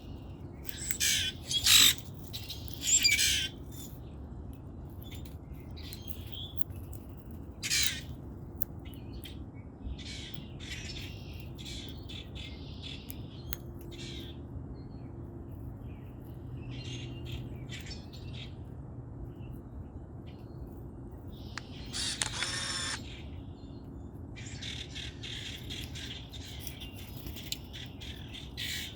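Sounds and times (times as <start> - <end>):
grackles squawking: 21.6 - 23.0
buzzy bird call: 21.9 - 23.0.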